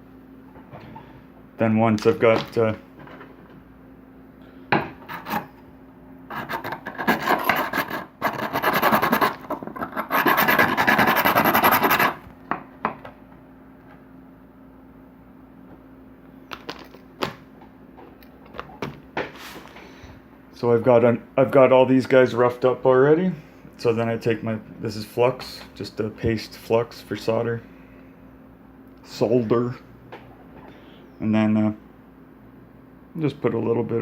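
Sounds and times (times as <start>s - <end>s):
abrasive rasping on metal: 5.0s - 5.6s, 6.3s - 12.2s.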